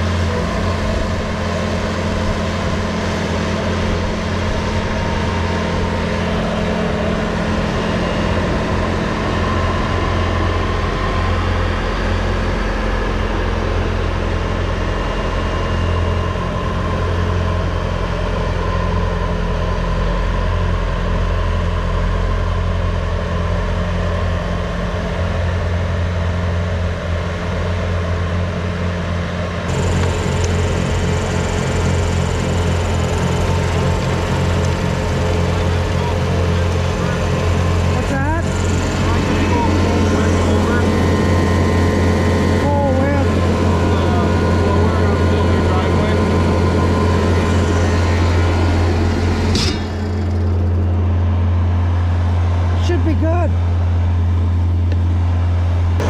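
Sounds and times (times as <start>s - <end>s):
heavy engine humming: 0.0s - 56.0s.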